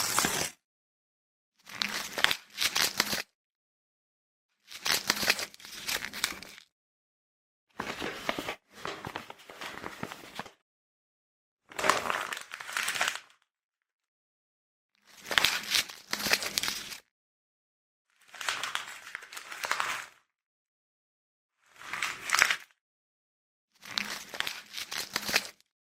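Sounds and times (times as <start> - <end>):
packing paper crinkling: 0.0 - 0.5, 4.7 - 6.6, 7.8 - 10.6, 11.7 - 13.3, 15.2 - 17.0, 23.8 - 25.6.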